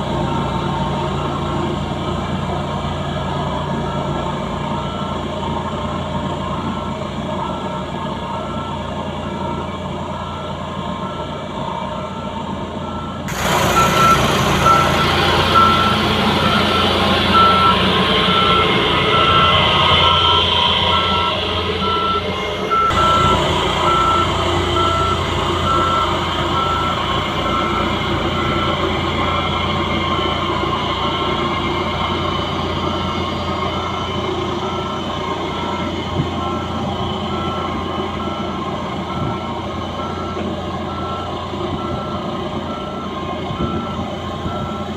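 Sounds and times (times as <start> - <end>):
reversing alarm beeping: 0.0 - 44.9
vibratory roller machine running: 13.3 - 42.7.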